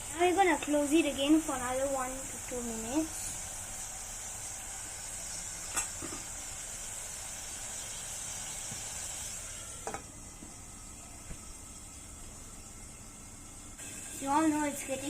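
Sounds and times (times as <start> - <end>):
tofu sizzling in oil: 0.0 - 10.9.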